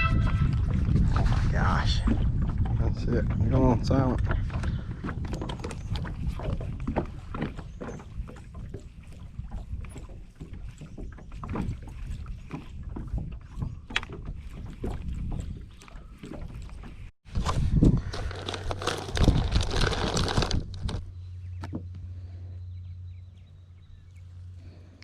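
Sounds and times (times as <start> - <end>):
wind rumble on microphone: 0.0 - 21.7.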